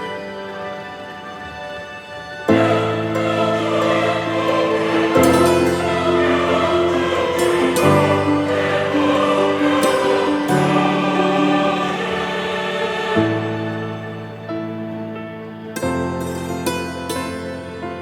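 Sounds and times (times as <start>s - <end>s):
choir singing sustained chords: 0.0s - 18.0s.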